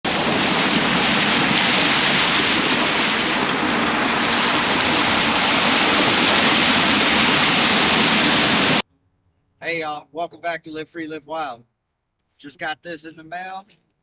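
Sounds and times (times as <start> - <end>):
loud steady rushing noise: 0.0 - 8.8.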